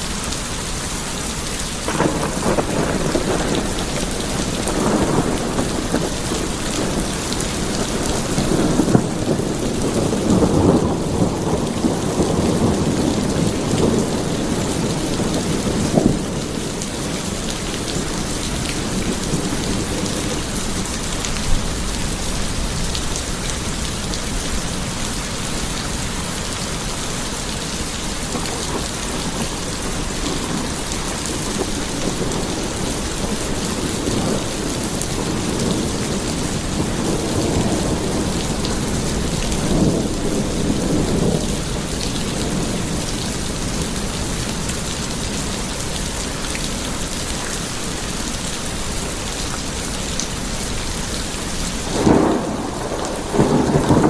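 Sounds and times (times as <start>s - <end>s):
steady rain: 0.0s - 54.0s
rolling thunder: 1.8s - 50.8s, 51.8s - 54.0s
sharp thunder cracks: 1.9s - 18.1s, 51.9s - 54.0s.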